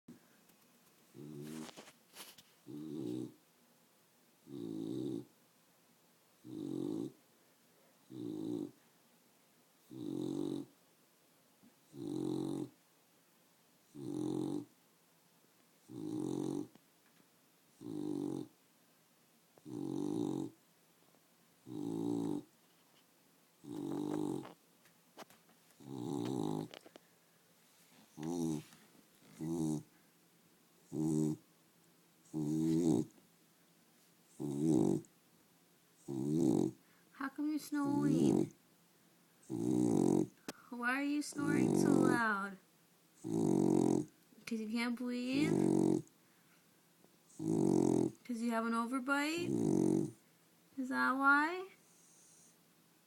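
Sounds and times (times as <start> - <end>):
dog snoring: 1.1 - 3.4, 4.4 - 5.3, 6.4 - 7.2, 8.0 - 8.8, 9.9 - 10.8, 11.8 - 12.8, 13.8 - 14.7, 15.8 - 16.8, 17.7 - 18.6, 19.6 - 20.6, 21.6 - 22.5, 23.6 - 24.6, 25.8 - 27.0, 28.1 - 29.9, 30.8 - 31.4, 32.2 - 33.2, 34.3 - 35.1, 36.0 - 36.9, 37.7 - 38.6, 39.4 - 40.6, 41.2 - 42.5, 43.2 - 44.2, 45.2 - 46.1, 47.3 - 48.3, 49.3 - 50.2, 51.8 - 52.6.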